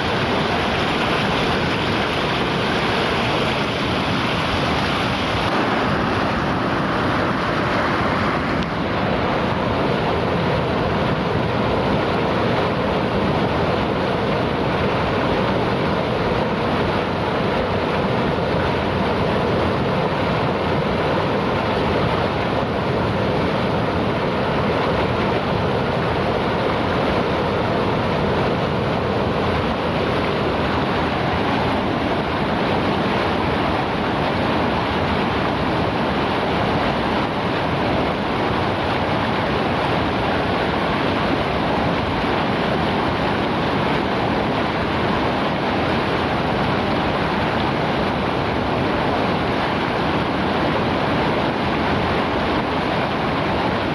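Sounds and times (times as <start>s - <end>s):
river water rushing: 0.0s - 53.9s.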